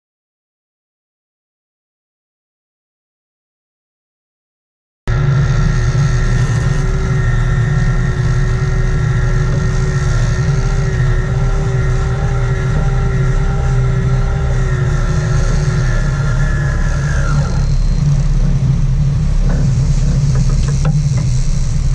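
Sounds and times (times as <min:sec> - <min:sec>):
boat engines running steadily: 0:05.1 - 0:21.9.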